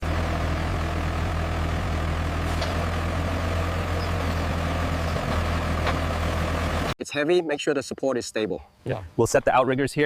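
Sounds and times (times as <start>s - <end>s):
heavy vehicle engine humming: 0.0s - 7.0s.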